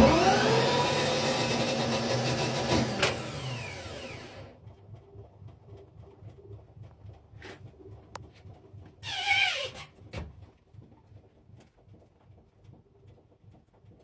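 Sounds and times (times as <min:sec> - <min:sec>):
electric starter motor spinning: 0:00.0 - 0:04.5.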